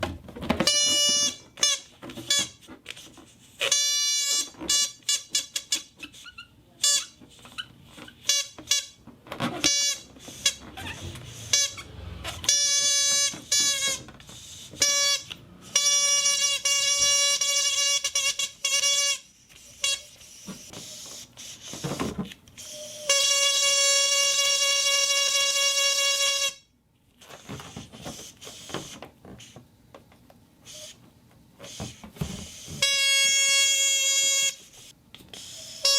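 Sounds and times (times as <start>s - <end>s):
toy whistle toots: 0.6s - 2.6s, 3.6s - 9.0s, 9.6s - 21.8s, 22.6s - 26.6s, 30.7s - 31.0s, 31.6s - 35.9s.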